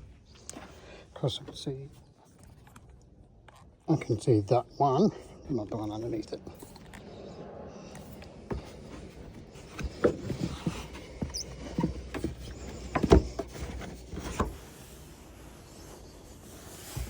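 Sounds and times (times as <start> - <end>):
rustling and scraping of trim: 8.0 - 17.0.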